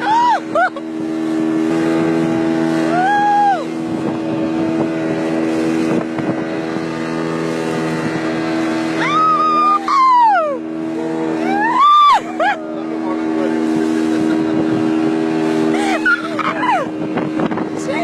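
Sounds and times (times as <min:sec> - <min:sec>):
speedboat engine running: 0:00.0 - 0:18.0
wind noise: 0:03.6 - 0:07.1, 0:16.4 - 0:18.0.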